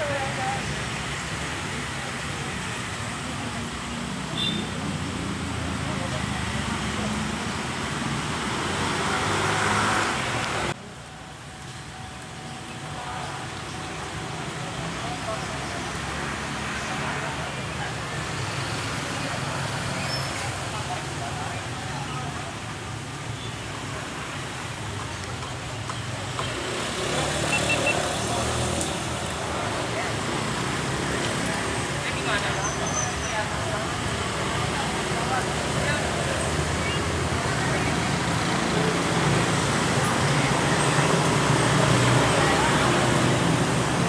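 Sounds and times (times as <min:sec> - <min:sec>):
passing traffic rush: 0:00.0 - 0:44.0.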